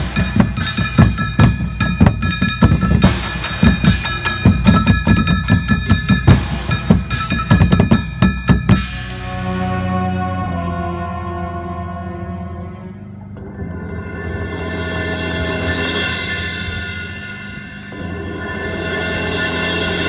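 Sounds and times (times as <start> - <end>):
bass and snare drum hits: 0.0 - 9.3
sustained band chord: 0.0 - 20.0.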